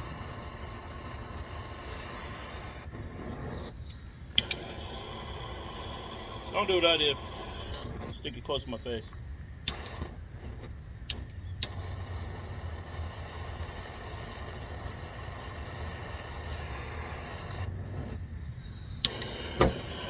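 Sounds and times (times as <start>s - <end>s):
gas torch flame roaring: 0.0s - 20.0s
wind rumble: 0.0s - 20.0s
sharp metallic clicks: 4.3s - 4.8s, 6.5s - 10.1s.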